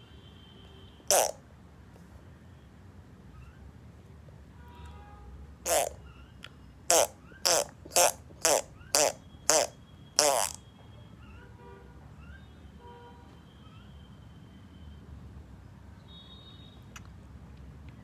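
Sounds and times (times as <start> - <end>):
fart sounds: 1.1 - 1.4, 5.7 - 6.0, 6.9 - 10.6.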